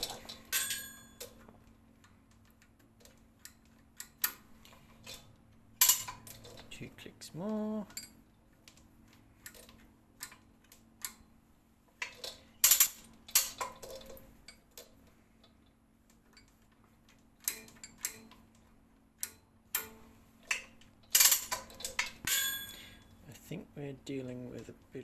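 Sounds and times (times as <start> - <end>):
chain block ratchet clicking: 0.0 - 1.4, 17.4 - 18.4, 19.2 - 23.0.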